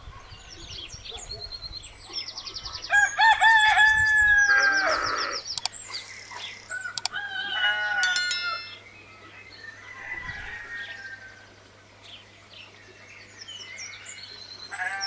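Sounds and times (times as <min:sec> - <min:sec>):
rooster crowing: 0:06.7 - 0:08.0.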